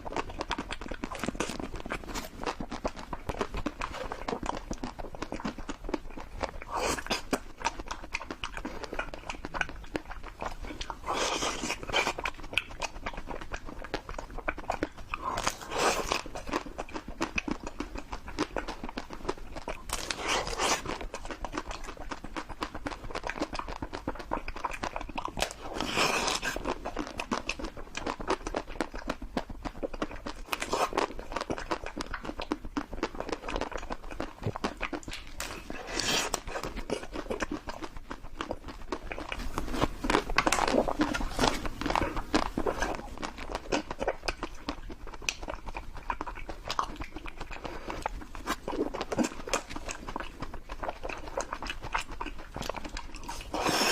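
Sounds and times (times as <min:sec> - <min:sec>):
bite or slurp: 0:00.0 - 0:53.9
wet chewing mouth clicks: 0:00.0 - 0:53.9.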